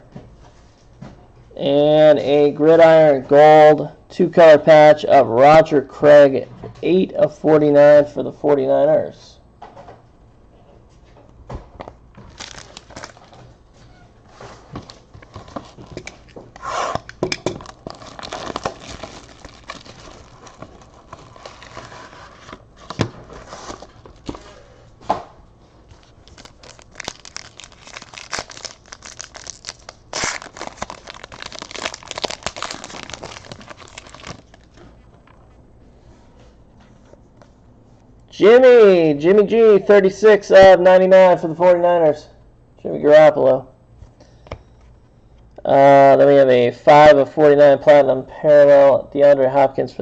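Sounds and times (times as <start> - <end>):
packaging tearing and crinkling: 12.2 - 13.4, 14.9 - 24.4, 25.9 - 34.8.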